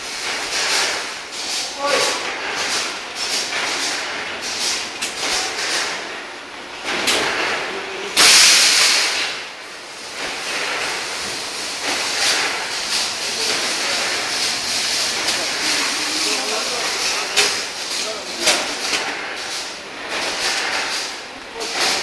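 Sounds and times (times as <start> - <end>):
tube winding machine running: 0.0 - 22.0
loud burst of hissing: 8.2 - 9.4.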